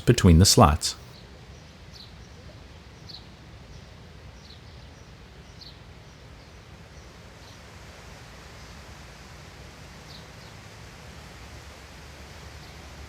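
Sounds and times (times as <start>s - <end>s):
steady background hiss: 0.0s - 1.0s.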